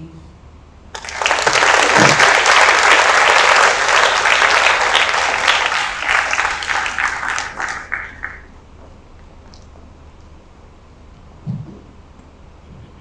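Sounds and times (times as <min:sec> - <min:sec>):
audience applauding: 0:00.9 - 0:08.5.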